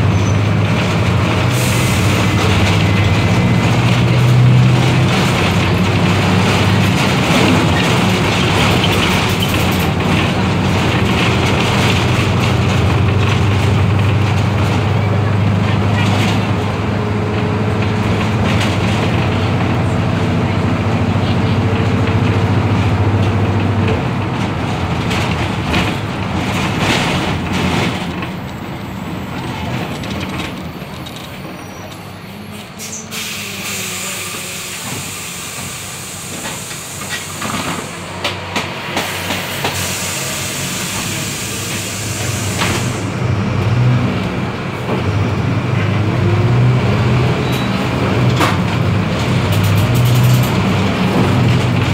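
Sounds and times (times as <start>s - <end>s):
bus diesel engine humming: 0.0s - 51.9s
compressed air hiss: 39.1s - 43.0s.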